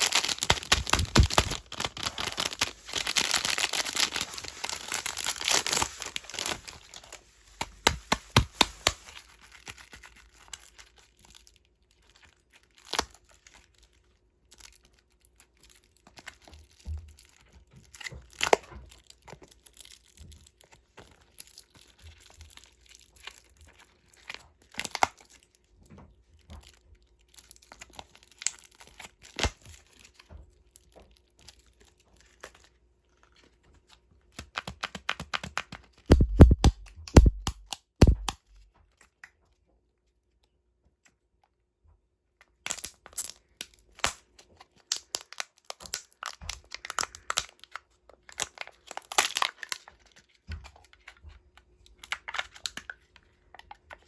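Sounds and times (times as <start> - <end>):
heavy knocks of packaging: 0.0 - 3.4, 36.1 - 38.4
plastic wrappers crinkling: 0.0 - 25.4, 35.9 - 38.4, 42.7 - 51.2.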